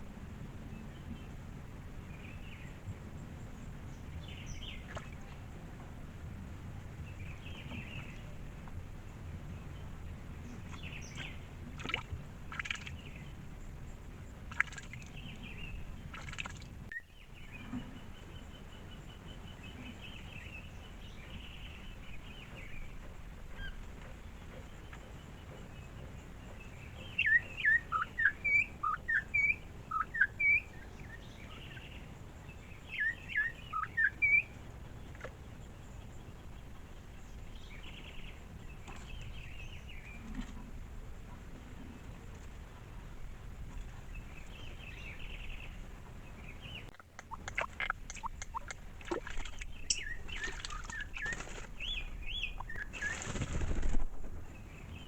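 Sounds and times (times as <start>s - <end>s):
wild birds calling: 2.1s - 55.0s
bird trill: 27.1s - 31.8s, 32.9s - 34.6s, 49.8s - 53.9s.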